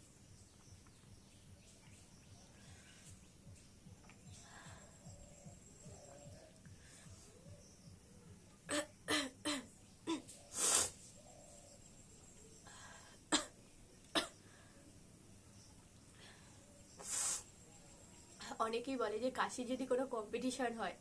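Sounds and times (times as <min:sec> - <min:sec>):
woman coughing: 0:08.7 - 0:10.2, 0:13.3 - 0:13.6.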